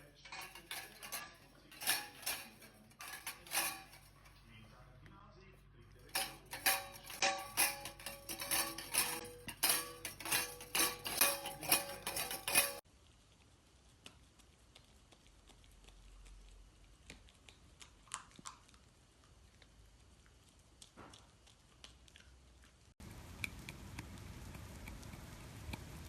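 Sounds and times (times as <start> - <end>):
metal bowl clinking and rattling: 0.0 - 4.4, 6.0 - 12.8.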